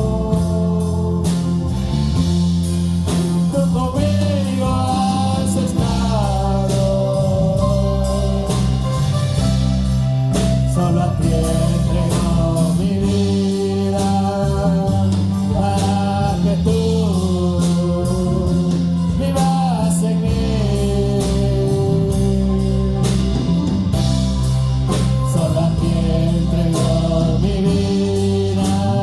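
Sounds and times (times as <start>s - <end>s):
slow gospel band music: 0.0s - 29.0s.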